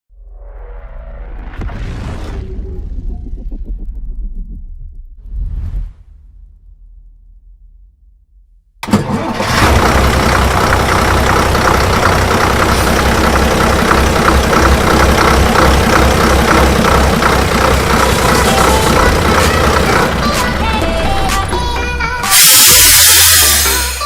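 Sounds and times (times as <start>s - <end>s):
diesel bus engine running: 8.8s - 24.0s.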